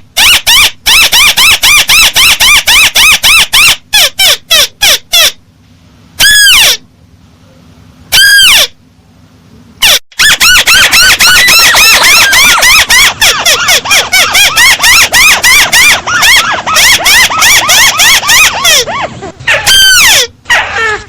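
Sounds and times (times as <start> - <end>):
bird whistled calls: 10.2 - 18.9.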